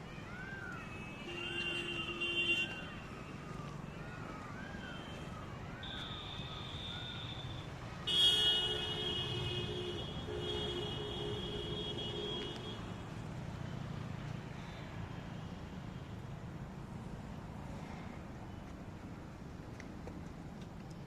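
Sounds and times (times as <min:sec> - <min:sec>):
traffic hum: 0:00.0 - 0:21.0
vehicle horn honking: 0:08.1 - 0:12.8.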